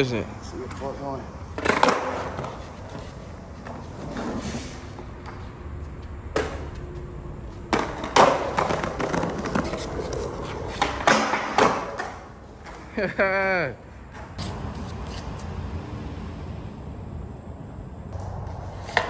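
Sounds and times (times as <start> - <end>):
skateboard rolling on concrete: 0.4 - 19.0
skateboard hard knocks: 1.6 - 3.0, 7.7 - 12.8
skateboard trick clacks: 1.6 - 4.3, 6.3 - 6.8, 7.7 - 12.9, 18.1 - 19.0
skateboard trucks grinding metal: 7.7 - 12.9.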